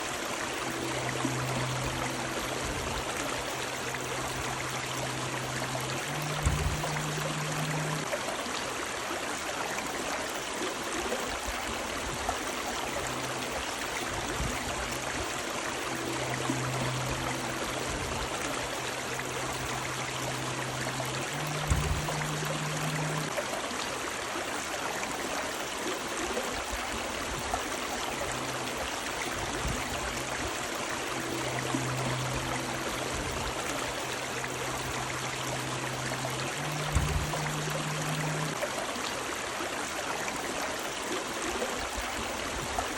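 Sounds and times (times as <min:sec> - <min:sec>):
faint low hum: 0:00.0 - 0:08.1, 0:12.6 - 0:23.4, 0:28.0 - 0:38.6
river water rushing: 0:00.0 - 0:42.9
low thumps: 0:06.1 - 0:08.0, 0:21.4 - 0:23.3, 0:36.6 - 0:38.5.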